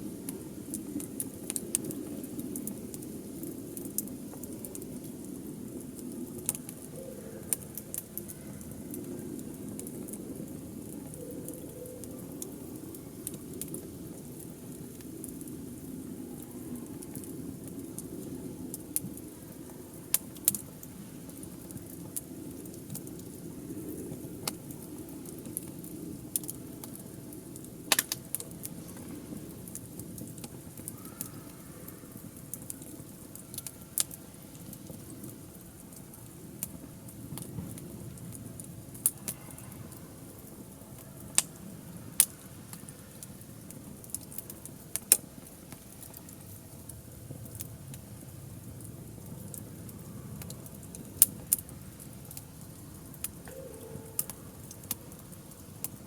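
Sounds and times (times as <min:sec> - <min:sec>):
wood fire crackling: 0:00.0 - 0:56.0
fire pops and snaps: 0:00.2 - 0:19.3, 0:20.0 - 0:31.3, 0:32.2 - 0:39.4, 0:40.4 - 0:53.6.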